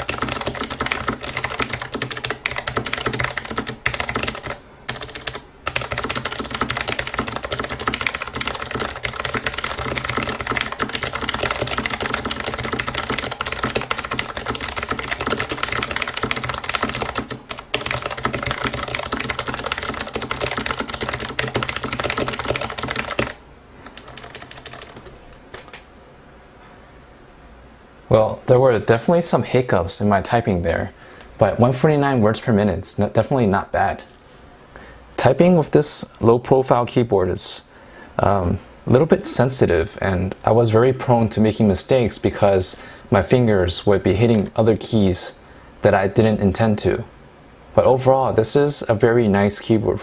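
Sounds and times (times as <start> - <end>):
fast typing on clicky keyboard: 0.0 - 25.8, 44.3 - 44.6.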